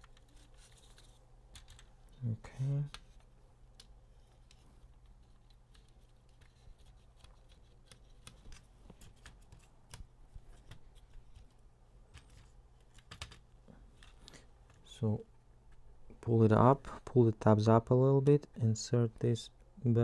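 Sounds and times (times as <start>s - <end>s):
plastic parts clicking and tapping: 0.0s - 1.9s, 2.8s - 13.4s
low steady hum: 0.0s - 20.0s.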